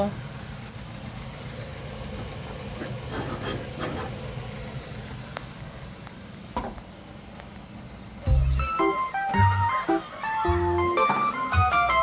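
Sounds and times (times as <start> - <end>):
steady low hum: 0.0 - 8.8.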